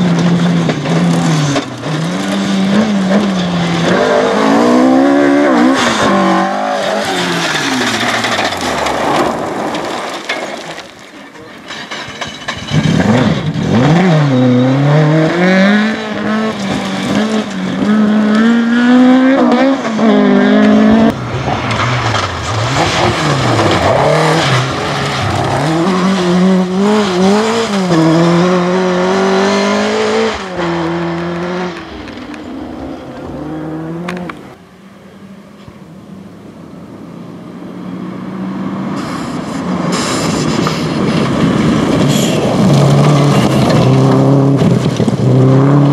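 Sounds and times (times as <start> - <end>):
rally car engine at full throttle: 0.0 - 45.9.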